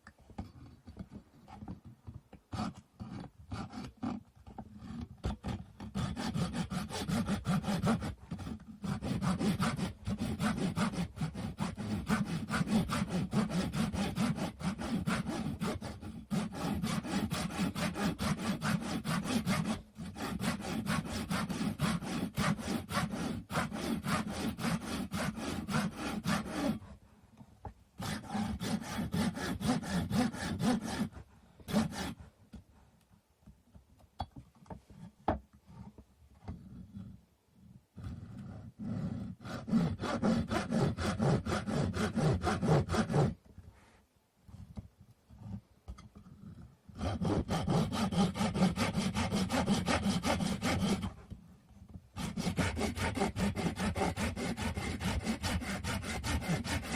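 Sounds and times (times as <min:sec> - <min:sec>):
hand saw cutting wood: 0:02.5 - 0:26.9, 0:28.0 - 0:32.2, 0:38.0 - 0:43.4, 0:46.9 - 0:51.3, 0:52.2 - 0:56.9.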